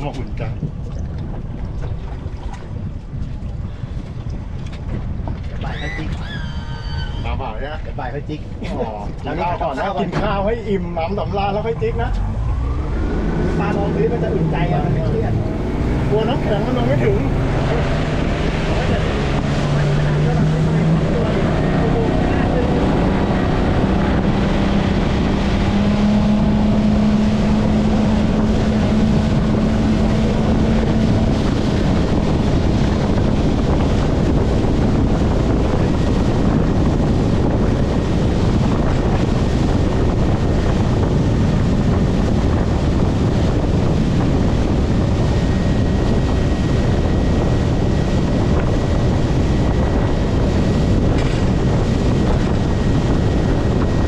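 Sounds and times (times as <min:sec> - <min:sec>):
boat engine humming: 0:00.0 - 0:54.0
wind buffeting microphone: 0:00.0 - 0:54.0.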